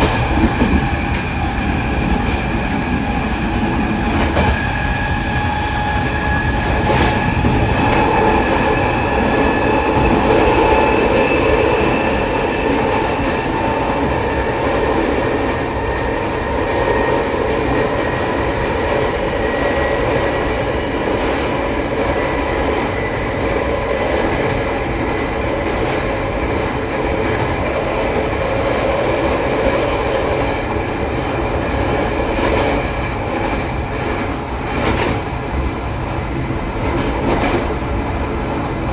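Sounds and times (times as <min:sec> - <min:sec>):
train wheels rumbling on rail: 0:00.0 - 0:38.9.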